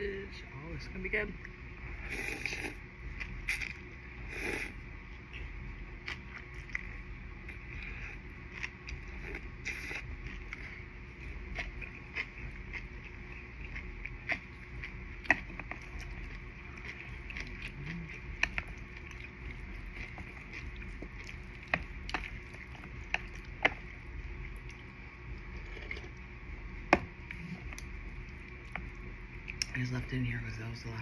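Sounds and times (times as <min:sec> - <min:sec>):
steady background hum: 0:00.0 - 0:31.0.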